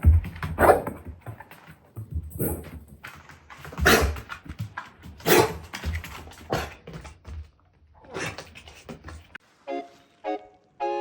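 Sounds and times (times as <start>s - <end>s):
dogs barking: 0.6s - 0.8s.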